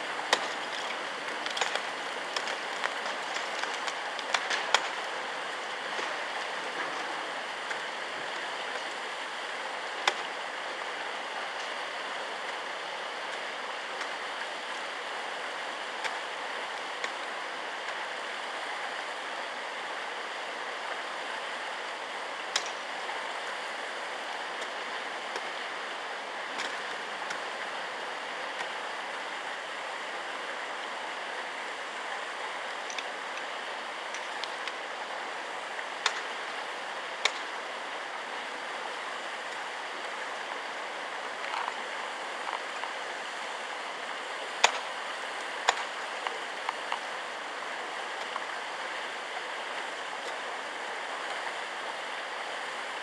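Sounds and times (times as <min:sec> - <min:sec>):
running water rushing: 0:00.0 - 0:53.0.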